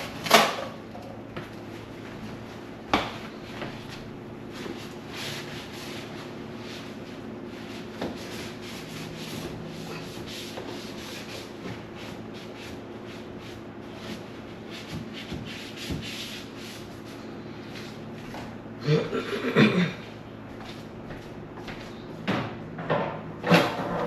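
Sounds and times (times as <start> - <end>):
cloth scrubbing refrigerator: 1.4 - 18.6.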